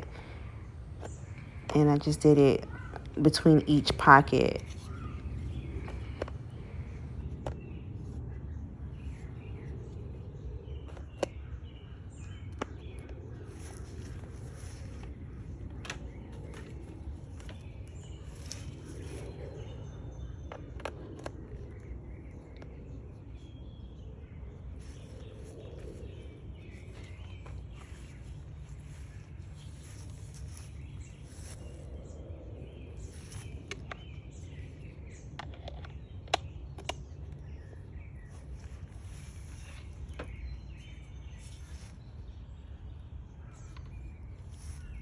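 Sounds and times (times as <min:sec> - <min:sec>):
birds chirping: 0:00.0 - 0:07.8.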